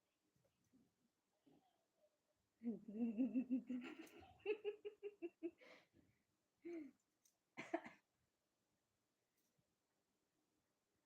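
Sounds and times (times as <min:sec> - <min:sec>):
woman laughing: 0:02.6 - 0:05.7.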